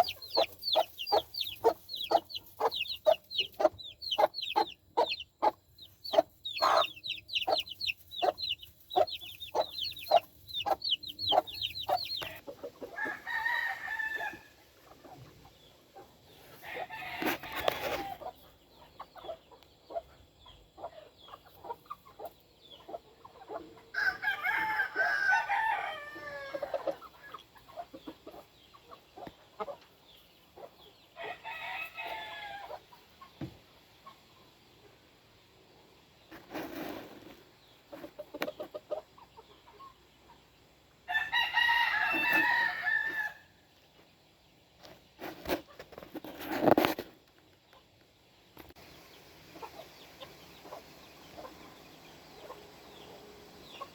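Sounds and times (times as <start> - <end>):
rooster crowing: 13.0 - 14.6, 23.9 - 26.7, 31.2 - 32.7, 41.1 - 43.5.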